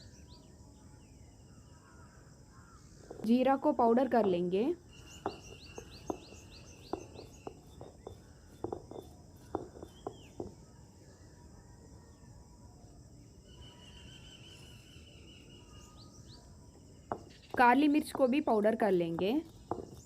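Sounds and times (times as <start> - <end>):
birds chirping: 0.0 - 12.1, 13.5 - 20.0
insects trilling: 0.0 - 20.0
seeds being pounded: 3.0 - 4.5, 5.1 - 10.6, 17.1 - 20.0.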